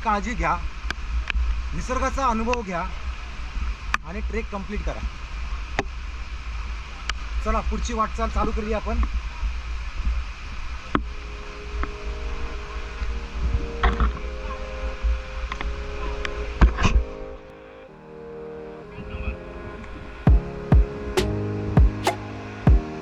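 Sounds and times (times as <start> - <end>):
background music with held tones: 11.0 - 23.0.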